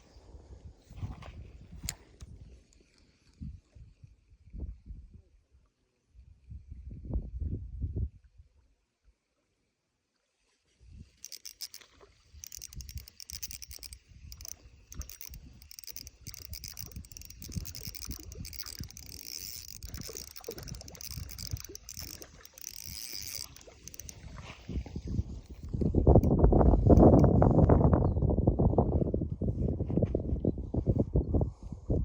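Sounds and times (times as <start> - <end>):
fishing reel clicking: 11.2 - 27.3.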